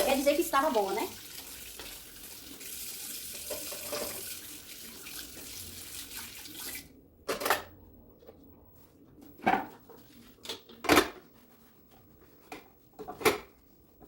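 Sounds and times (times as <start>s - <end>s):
water running from a tap: 0.0s - 6.9s.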